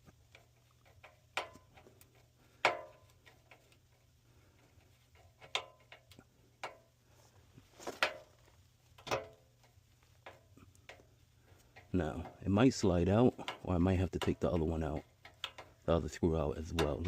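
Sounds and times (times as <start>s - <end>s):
tools clicking and knocking: 0.0s - 7.0s, 7.9s - 17.0s.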